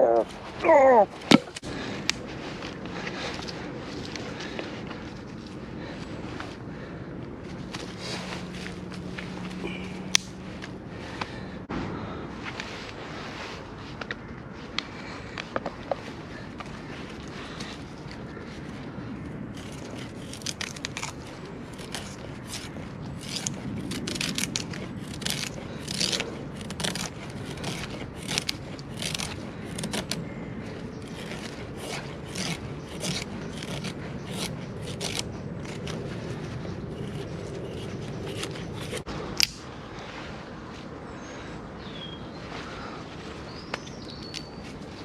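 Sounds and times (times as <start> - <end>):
sharp scraping strokes: 19.5 - 39.1.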